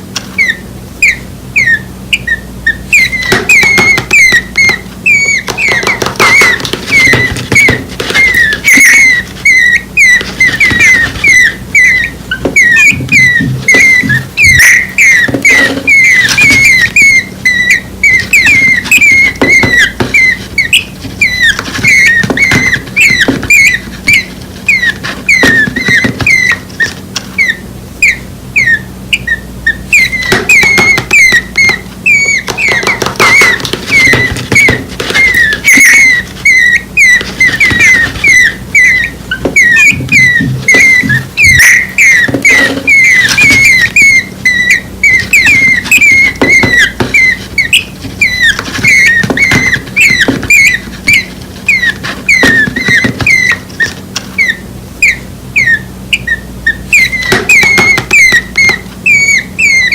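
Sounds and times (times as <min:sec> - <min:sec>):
nestling birds cheeping: 0:00.0 - 0:59.9.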